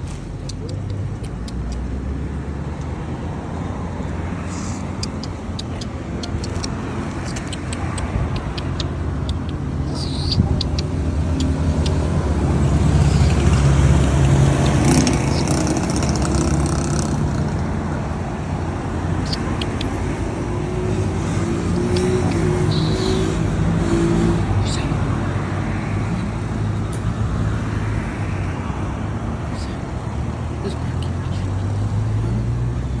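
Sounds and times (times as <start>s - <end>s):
vehicle engine rumbling: 0.0s - 33.0s
short high clicks: 4.5s - 12.1s, 19.2s - 20.2s.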